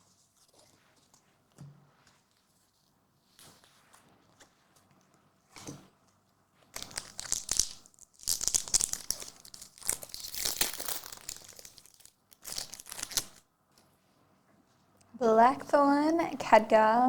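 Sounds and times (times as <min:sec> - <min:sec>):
card pack wrapper tearing: 0:06.8 - 0:13.4.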